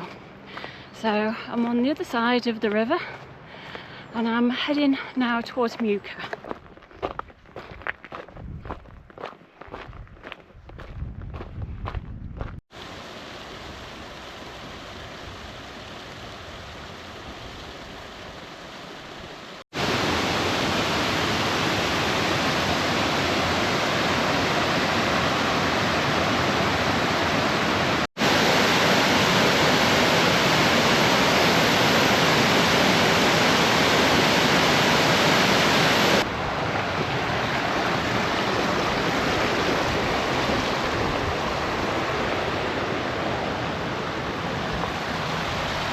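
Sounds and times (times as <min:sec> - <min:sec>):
river rushing: 0:12.8 - 0:45.9.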